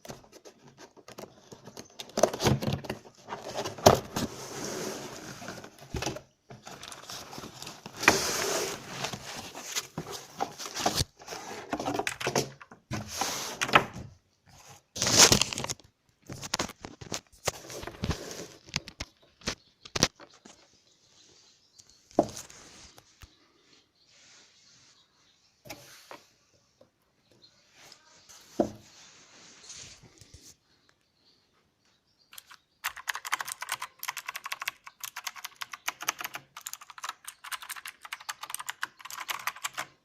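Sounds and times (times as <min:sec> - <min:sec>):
mechanical keyboard clicking: 0:32.4 - 0:39.9.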